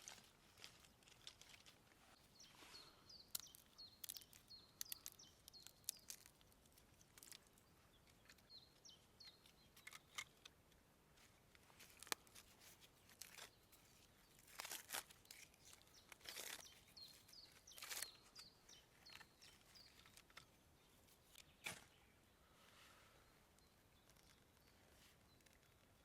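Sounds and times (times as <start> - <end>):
rustles and crunches: 0.0 - 22.0, 23.9 - 26.0
small high bird chirps: 0.6 - 10.5, 12.8 - 22.3.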